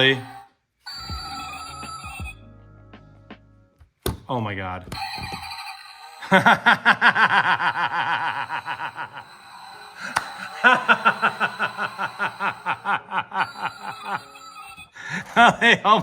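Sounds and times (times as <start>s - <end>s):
man laughing hard: 6.2s - 9.4s, 10.0s - 14.4s, 15.0s - 16.0s.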